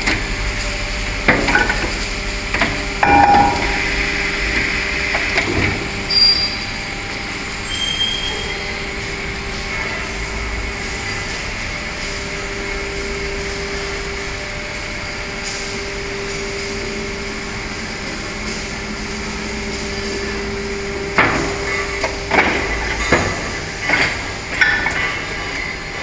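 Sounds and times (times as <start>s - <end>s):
moulding machine humming: 0.0s - 26.0s
sharp metallic clanks and knocks: 2.6s - 5.8s.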